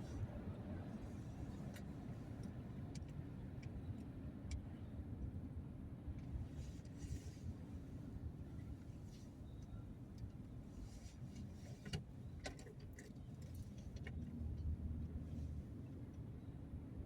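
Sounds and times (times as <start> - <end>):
vehicle rumble from inside cab: 0.0 - 17.0.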